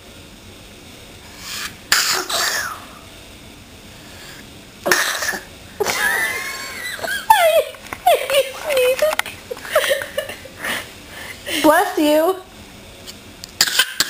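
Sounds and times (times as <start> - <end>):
child fake sneezing: 1.4 - 2.9.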